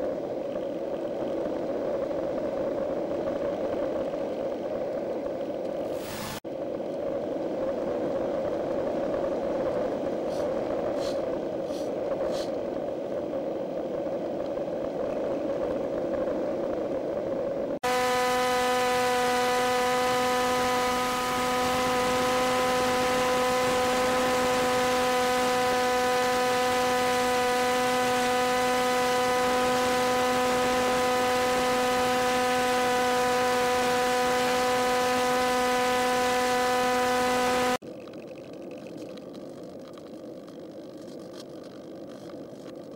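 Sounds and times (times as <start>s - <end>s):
static hiss: 5.7s - 6.4s
electrical hum-buzz: 14.6s - 37.8s.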